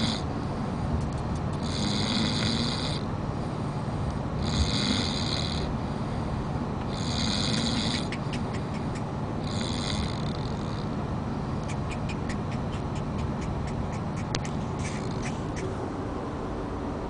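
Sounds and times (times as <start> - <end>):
pet snoring: 0.0 - 0.3, 1.6 - 3.1, 4.4 - 5.7, 6.9 - 8.8, 9.4 - 11.0, 14.2 - 15.6
road noise rumble: 0.0 - 17.0
light irregular clicks: 1.0 - 1.6.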